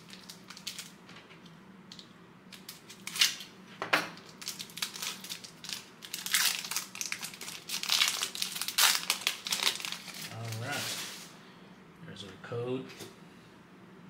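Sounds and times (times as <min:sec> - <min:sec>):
wrapper tearing and crinkling: 0:00.0 - 0:01.0, 0:02.5 - 0:03.5, 0:04.2 - 0:11.2.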